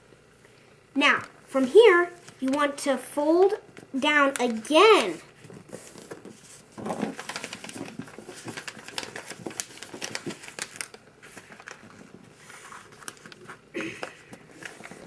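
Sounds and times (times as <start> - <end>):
paper folding and crinkling: 4.2 - 15.0.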